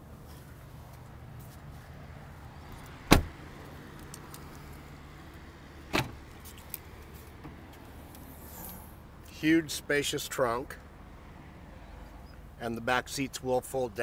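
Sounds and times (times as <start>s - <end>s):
door latch thump: 3.1s - 3.3s
car door shutting: 3.1s - 3.4s, 5.9s - 6.2s.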